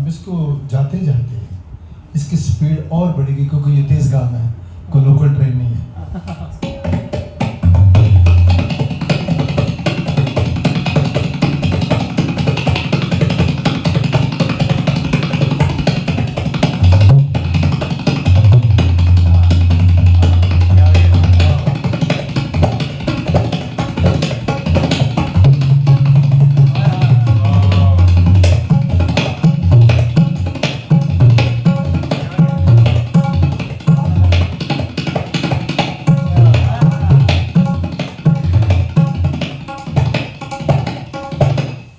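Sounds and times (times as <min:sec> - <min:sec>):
tabla fast rhythm: 0:06.2 - 0:41.9
deep bass drum tones: 0:07.6 - 0:08.8, 0:16.5 - 0:23.8, 0:24.4 - 0:34.7, 0:36.1 - 0:39.4.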